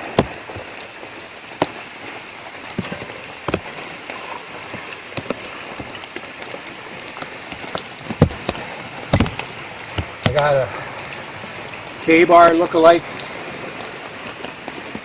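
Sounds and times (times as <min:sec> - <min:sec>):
steady rain: 0:00.0 - 0:15.0.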